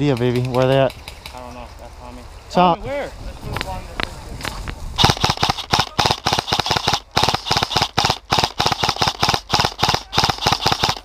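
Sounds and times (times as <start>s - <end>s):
gear rattling while running: 5.0s - 11.0s.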